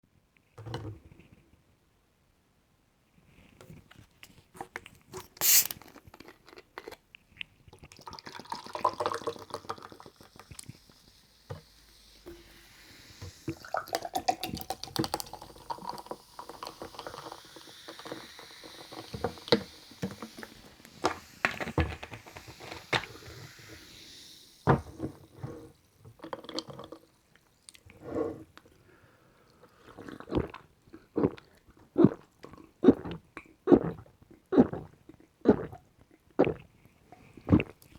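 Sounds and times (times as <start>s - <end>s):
can opening hiss: 5.2s - 5.9s, 10.1s - 25.2s
drink fizzing: 5.3s - 6.0s, 7.9s - 27.2s
swallowing gulps: 29.6s - 37.9s.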